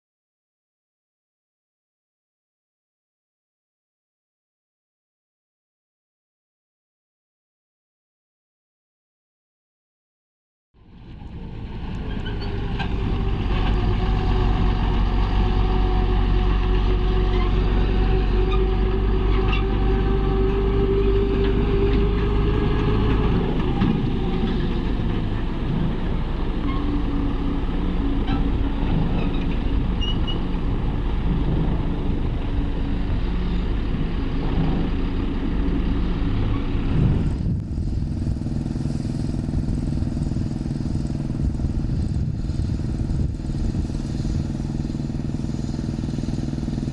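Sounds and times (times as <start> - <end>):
heavy diesel machinery running: 10.8 - 46.9.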